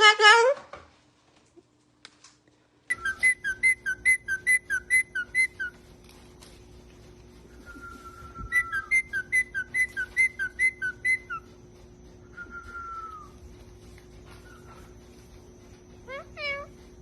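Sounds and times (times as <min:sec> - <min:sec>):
parrot whistling: 0:02.9 - 0:05.8, 0:07.6 - 0:11.5.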